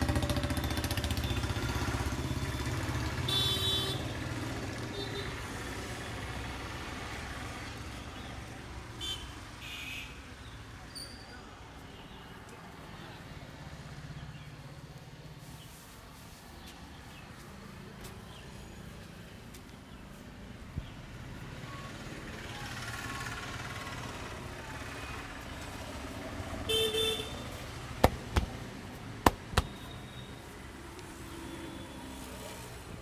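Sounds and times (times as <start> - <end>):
street traffic: 0.0 - 33.0
sharp smacks: 28.0 - 28.6, 29.3 - 29.8.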